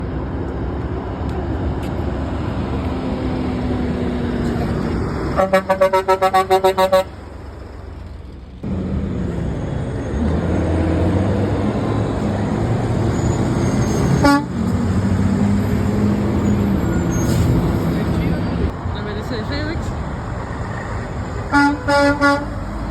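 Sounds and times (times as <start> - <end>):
heavy truck engine running: 0.0 - 22.9
road traffic noise: 0.0 - 22.9
truck horn honking: 5.3 - 7.2, 14.1 - 14.6, 21.5 - 22.6.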